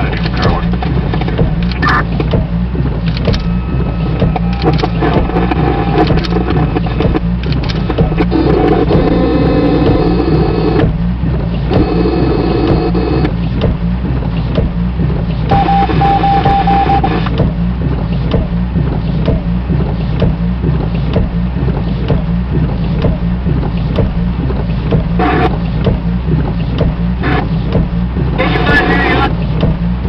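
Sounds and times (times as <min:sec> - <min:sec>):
rapid beeps: 0:01.8 - 0:02.1, 0:03.3 - 0:07.3, 0:08.0 - 0:10.9, 0:11.7 - 0:13.3, 0:15.5 - 0:17.5, 0:25.1 - 0:25.5
buzzy radio noise: 0:25.2 - 0:25.5, 0:28.4 - 0:29.4.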